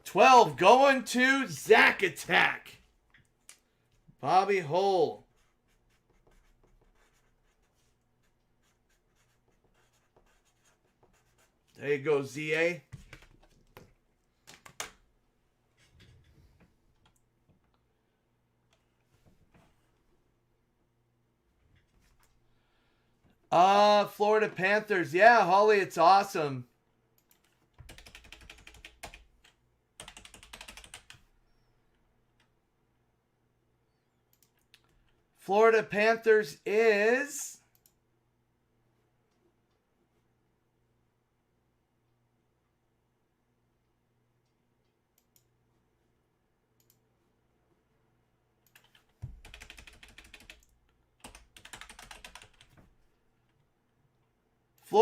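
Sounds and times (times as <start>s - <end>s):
computer keyboard typing: 13.0s - 15.0s, 27.2s - 31.2s, 48.7s - 52.8s.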